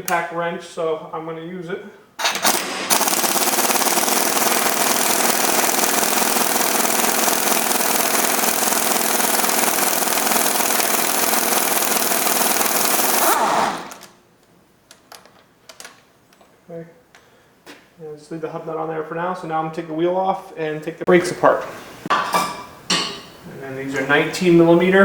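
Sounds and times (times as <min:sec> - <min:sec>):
impact wrench hammering: 0:02.2 - 0:14.1.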